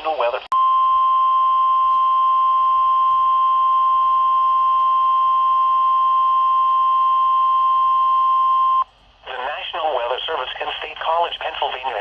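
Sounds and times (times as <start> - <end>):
steady alarm beep tone: 0.6 - 8.9.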